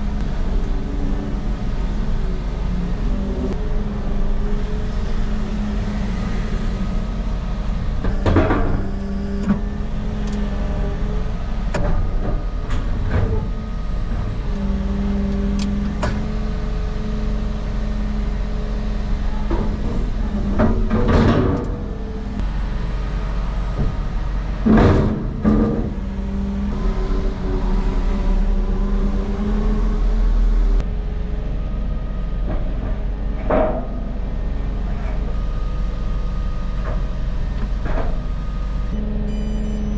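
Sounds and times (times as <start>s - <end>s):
heavy machine engine running: 0.0s - 39.9s
metal knocks and clanks: 19.5s - 22.0s, 24.6s - 26.1s.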